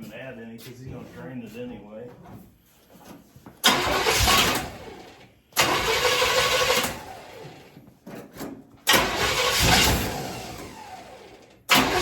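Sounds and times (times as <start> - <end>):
car engine starting: 3.6 - 7.8, 8.8 - 12.0.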